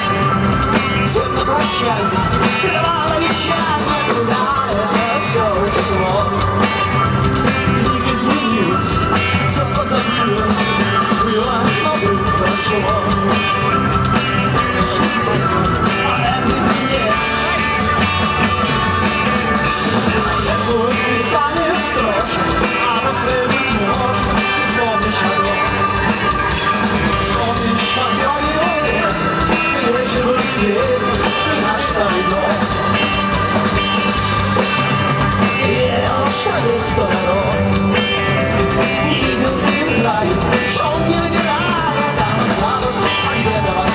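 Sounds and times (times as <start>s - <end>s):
rock and roll band music: 0.0s - 43.9s.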